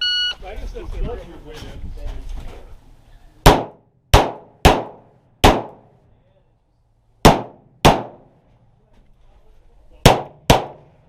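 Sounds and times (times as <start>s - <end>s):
pistol shots: 3.5s - 5.8s, 7.2s - 8.2s, 10.0s - 10.9s.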